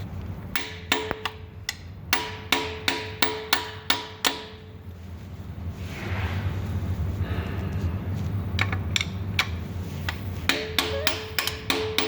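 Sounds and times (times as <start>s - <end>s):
hammer striking metal: 0.5s - 1.4s, 2.1s - 4.6s, 10.5s - 12.0s.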